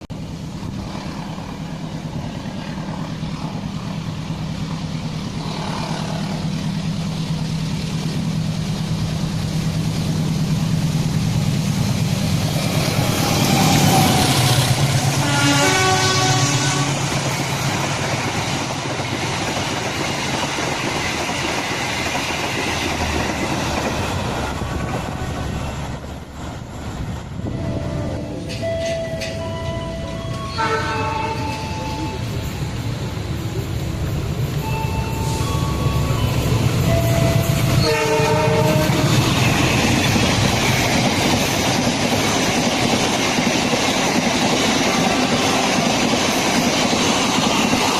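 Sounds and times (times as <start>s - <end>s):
diesel locomotive engine drone: 0.0s - 47.9s
train wheels on rails: 0.0s - 47.9s
train horn: 5.4s - 6.5s, 13.3s - 17.2s, 27.4s - 32.2s, 36.9s - 39.7s.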